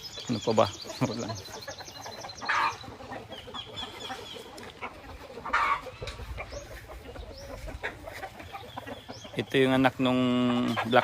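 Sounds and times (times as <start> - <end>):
chickens clucking: 0.0 - 11.0
short chicken calls: 0.8 - 9.4.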